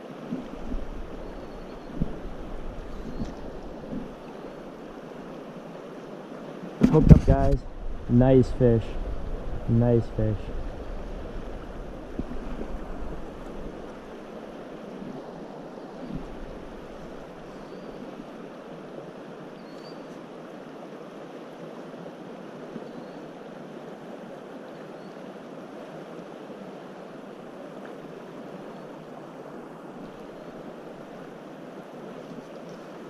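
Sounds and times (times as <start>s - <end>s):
river water rushing: 0.0s - 33.0s.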